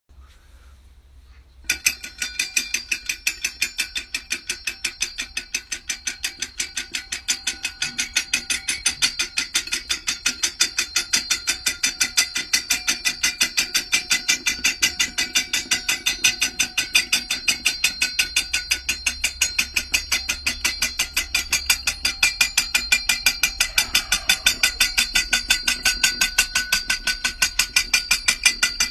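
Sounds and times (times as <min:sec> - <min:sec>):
woodpecker calling sharp notes: 0:23.6 - 0:25.1.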